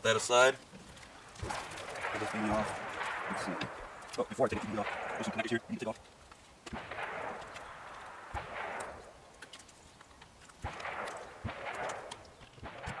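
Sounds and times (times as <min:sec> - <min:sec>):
plastic and wire rustling: 0:00.6 - 0:04.7.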